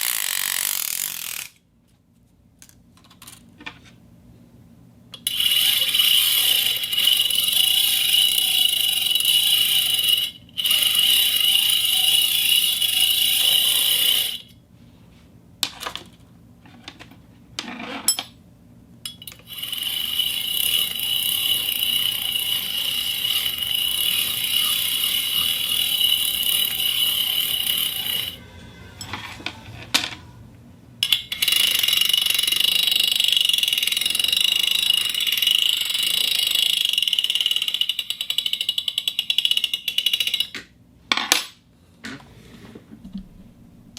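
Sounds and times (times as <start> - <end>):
fishing reel ratchet clicking: 0.0 - 1.6, 5.3 - 14.4, 19.3 - 28.4, 31.0 - 40.5.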